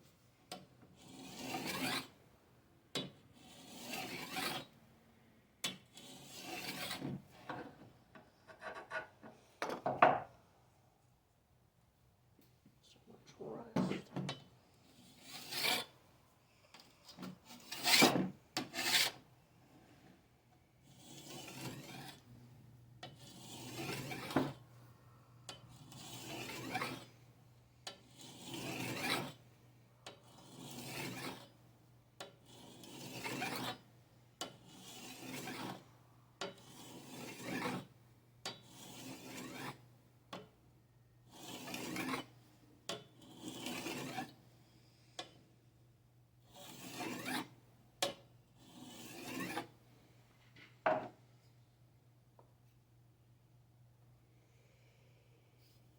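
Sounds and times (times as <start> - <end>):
knife scraping on sharpener: 1.0 - 2.1, 3.4 - 4.7, 5.9 - 7.1, 15.0 - 15.9, 17.5 - 19.2, 20.9 - 22.2, 23.1 - 24.6, 25.7 - 27.1, 28.1 - 29.4, 30.3 - 31.5, 32.4 - 33.8, 34.4 - 35.8, 36.5 - 37.9, 38.5 - 39.8, 41.3 - 42.3, 42.9 - 44.4, 46.5 - 47.6, 48.6 - 49.7.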